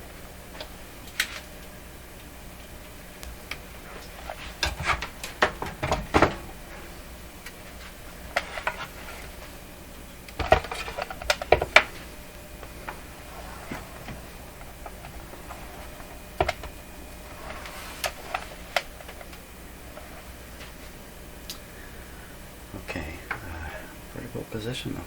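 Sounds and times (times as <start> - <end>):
switches and knobs clicking: 0.5 - 9.5, 10.1 - 13.1, 13.7 - 19.4.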